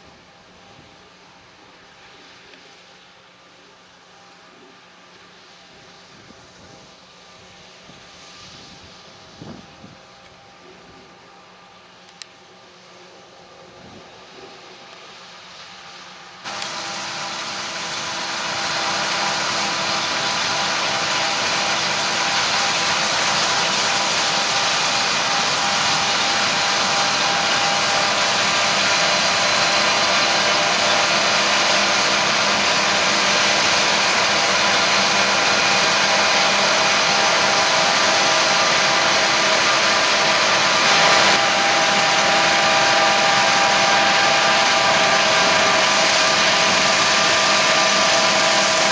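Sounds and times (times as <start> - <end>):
broad hiss: 14.6 - 48.9
diesel engine running: 16.4 - 48.9
whining drive tones: 16.5 - 48.9.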